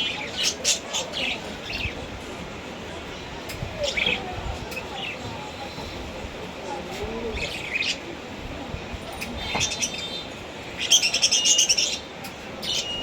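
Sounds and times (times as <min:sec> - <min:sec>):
lovebirds chirping: 0:09.4 - 0:13.0.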